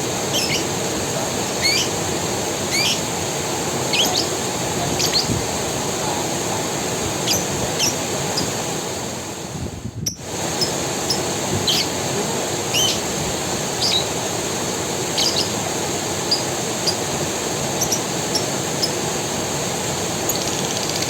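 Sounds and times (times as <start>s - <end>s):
creek water running: 0.0s - 21.0s
bird chirping: 0.3s - 0.7s, 1.6s - 2.0s, 2.7s - 3.1s, 3.9s - 5.4s, 7.2s - 8.5s, 12.7s - 13.0s, 13.8s - 14.1s, 15.2s - 15.6s, 16.3s - 17.0s, 17.8s - 19.0s.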